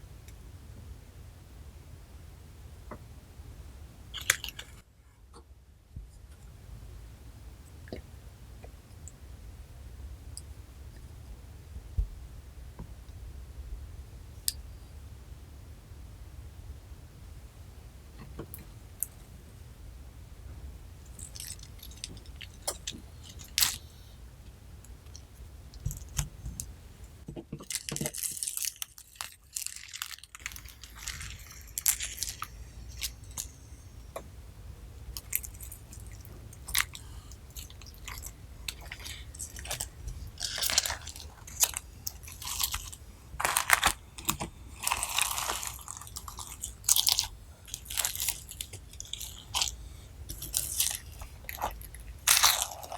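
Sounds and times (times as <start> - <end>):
crunchy slime crackling: 27.6 - 34.2, 35.1 - 52.9.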